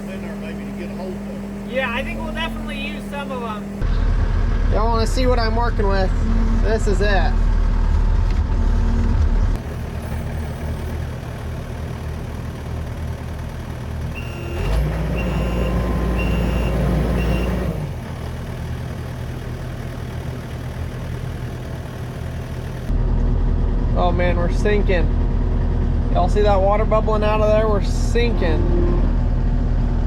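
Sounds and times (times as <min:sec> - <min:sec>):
skid steer engine revving: 0:00.0 - 0:23.3
reversing alarm beeps: 0:14.2 - 0:17.8.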